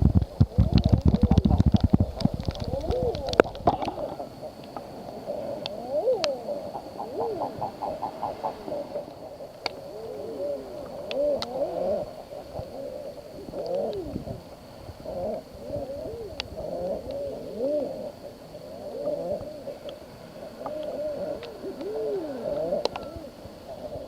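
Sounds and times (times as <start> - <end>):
eiders cooing calls: 0.4 - 24.0.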